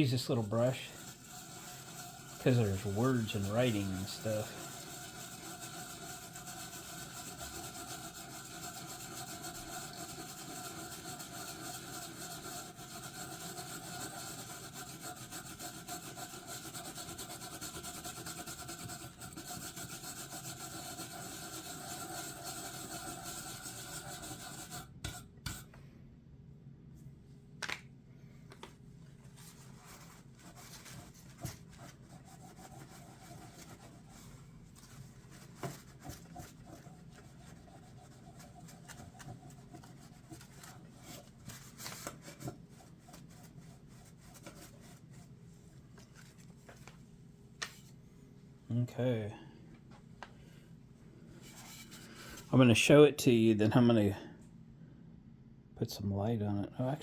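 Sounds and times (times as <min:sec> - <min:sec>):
brush scrubbing metal: 0:00.0 - 0:25.7, 0:29.2 - 0:45.4, 0:51.3 - 0:52.7.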